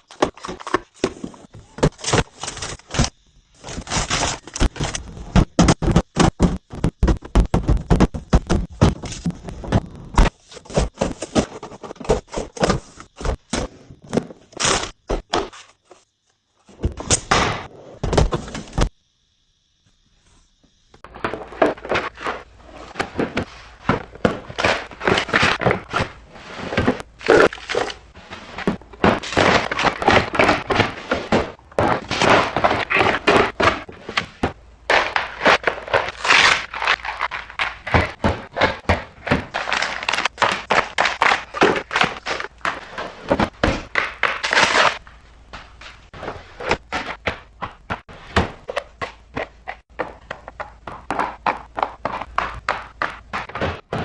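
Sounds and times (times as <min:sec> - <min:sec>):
food packages clacking and rustling: 0:34.9 - 0:45.0.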